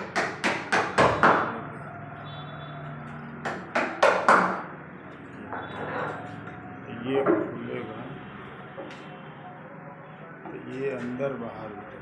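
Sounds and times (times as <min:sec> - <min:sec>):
sharp knocks on wood: 0:03.4 - 0:04.7.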